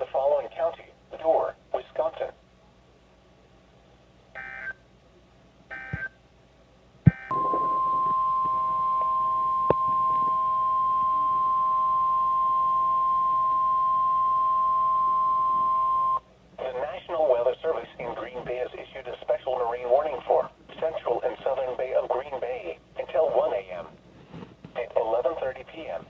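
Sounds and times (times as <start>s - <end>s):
steady warning alarm tone: 4.4s - 4.8s, 5.7s - 6.1s, 7.1s - 16.2s
touch-tone beeps: 5.8s - 6.1s, 7.1s - 16.2s.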